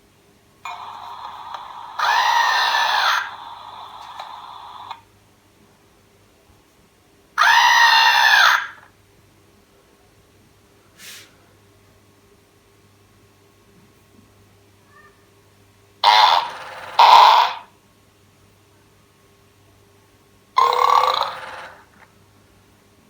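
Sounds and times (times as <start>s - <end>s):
toy electronic scream-like cry: 0.7s - 5.0s, 7.4s - 8.9s, 16.0s - 17.7s, 20.6s - 22.0s
faint short hiss: 11.0s - 11.4s.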